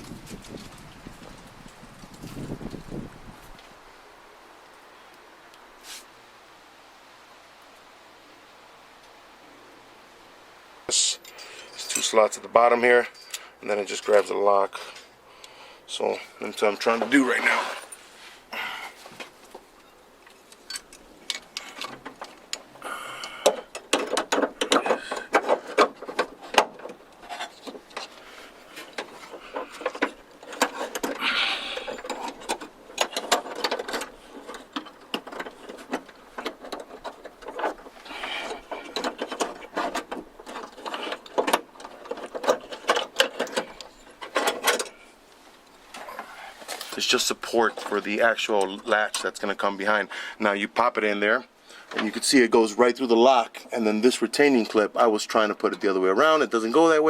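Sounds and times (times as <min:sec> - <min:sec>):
metal lock parts clicking: 0:20.5 - 0:28.1, 0:28.8 - 0:45.0.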